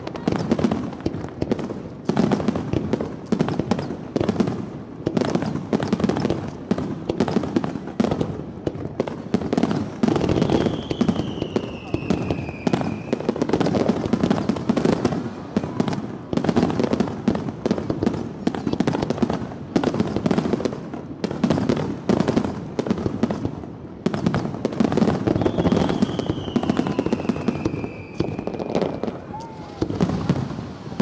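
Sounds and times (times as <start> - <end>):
fireworks bangs and crackles: 0.0 - 31.0
falling whistle: 25.4 - 29.8.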